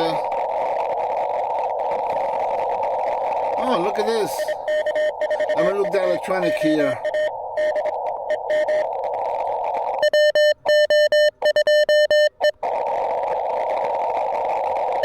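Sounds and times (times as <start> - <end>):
faint morse tone: 0.0 - 0.3, 3.5 - 8.9
radio band hiss: 0.0 - 9.9
loud morse code tone: 3.6 - 7.9, 10.0 - 12.6.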